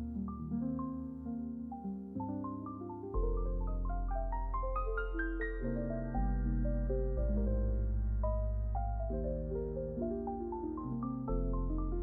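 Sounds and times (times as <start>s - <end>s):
soft keyboard notes: 0.0s - 12.0s
steady bass line: 3.2s - 12.0s.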